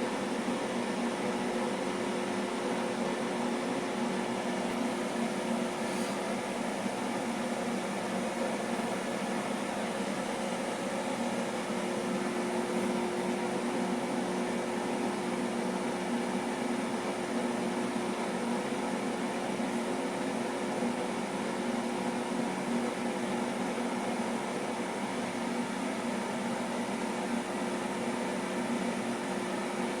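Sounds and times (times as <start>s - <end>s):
cooling fans rushing air: 0.0s - 30.0s.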